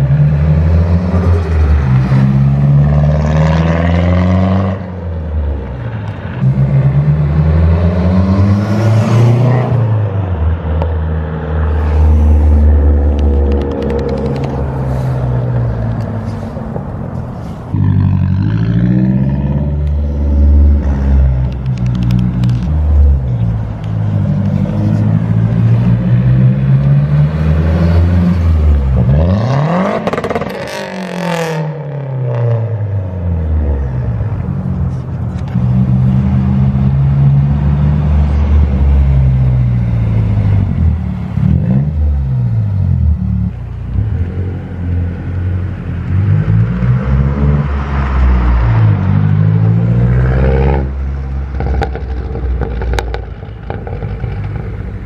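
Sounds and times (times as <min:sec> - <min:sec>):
car accelerating with loud exhaust: 0:11.6 - 0:55.0.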